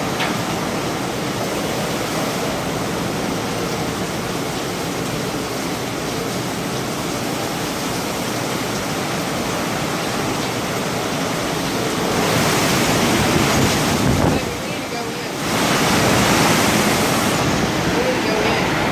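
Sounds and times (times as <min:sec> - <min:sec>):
strong wind rushing: 0:12.2 - 0:14.8, 0:15.4 - 0:18.9.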